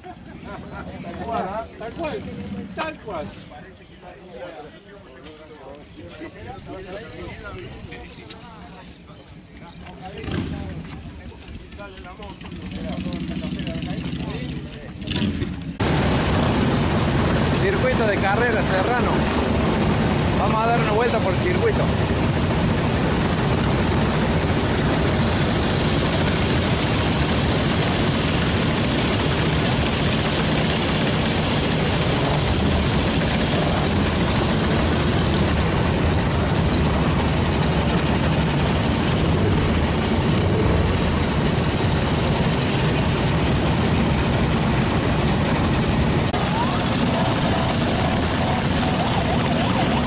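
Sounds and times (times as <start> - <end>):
vehicle engine droning: 10.1 - 50.0.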